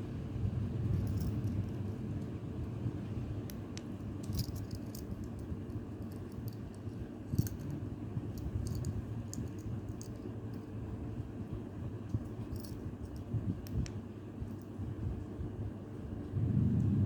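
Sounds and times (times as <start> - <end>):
low rumble: 0.0 - 5.8, 7.3 - 17.0
keys clicking and jingling: 0.9 - 1.8, 4.2 - 10.8, 12.1 - 13.3.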